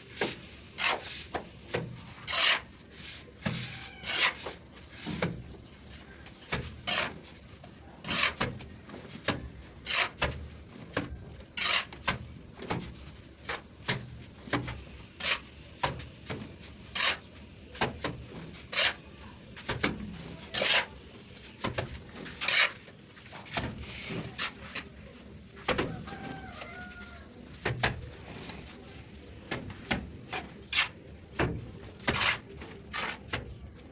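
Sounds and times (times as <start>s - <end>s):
trowel scraping wet plaster: 0.1s - 5.6s, 6.4s - 24.9s, 29.9s - 31.1s, 32.0s - 33.5s.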